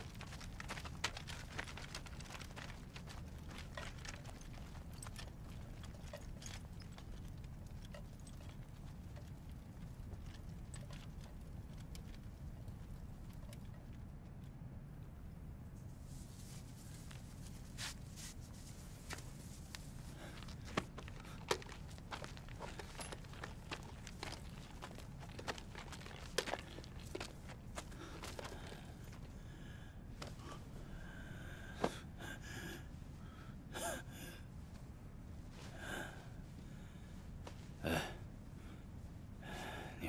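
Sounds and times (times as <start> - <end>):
soft footsteps: 0.0 - 14.0, 15.8 - 29.5
low background hum: 0.0 - 40.0
low steady background noise: 0.0 - 40.0.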